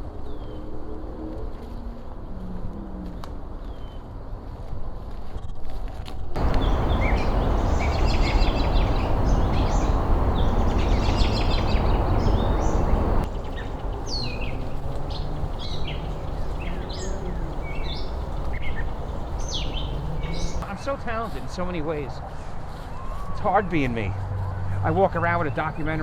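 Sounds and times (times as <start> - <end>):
loud steady rushing noise: 6.4 - 20.7
small birds chirping: 6.4 - 20.7.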